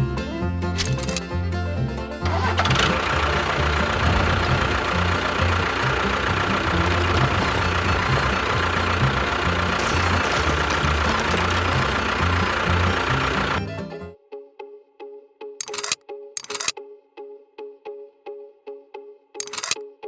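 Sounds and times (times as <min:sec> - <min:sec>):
background music: 0:00.0 - 0:14.4
small motor whining: 0:02.2 - 0:13.7.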